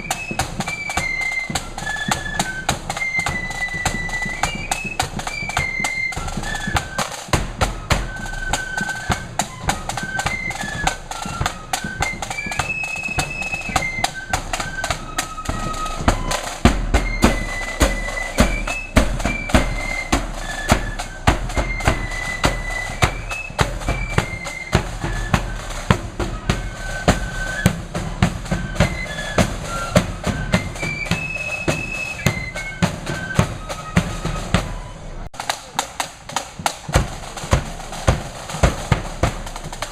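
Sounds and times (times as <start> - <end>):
flutes playing a melody: 0.0 - 39.9
snare drums: 0.0 - 39.9
bass drum: 16.0 - 27.2.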